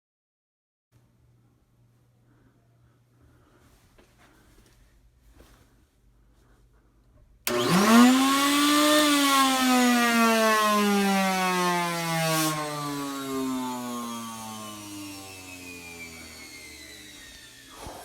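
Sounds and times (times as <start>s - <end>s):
central vacuum motor whine: 7.5s - 18.0s.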